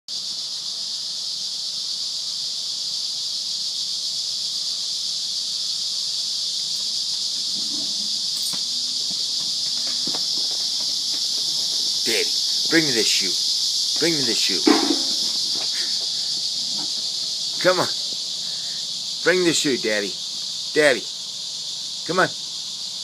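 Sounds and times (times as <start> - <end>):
cicadas droning: 0.1 - 23.0
faint knocks: 14.0 - 17.3.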